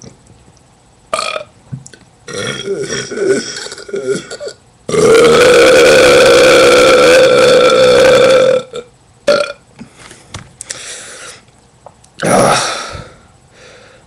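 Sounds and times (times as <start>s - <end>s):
long loud burp: 1.1s - 1.5s, 2.3s - 9.6s, 12.2s - 12.9s.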